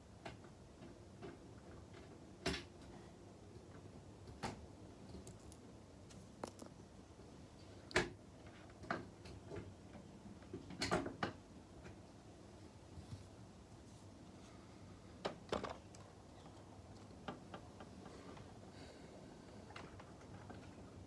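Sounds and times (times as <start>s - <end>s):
hard objects clicking and knocking: 5.1s - 6.8s.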